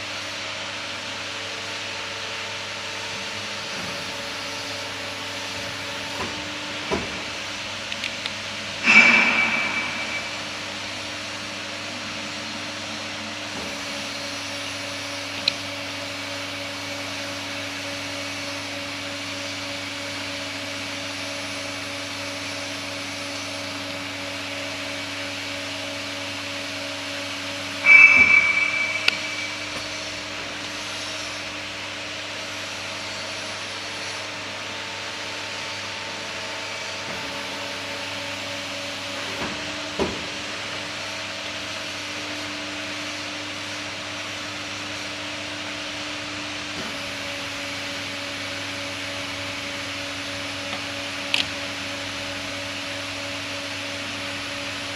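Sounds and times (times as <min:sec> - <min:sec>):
bending machine humming: 0:08.7 - 0:13.7, 0:27.6 - 0:31.0
sharp metallic clank: 0:08.8 - 0:11.2, 0:27.8 - 0:30.4.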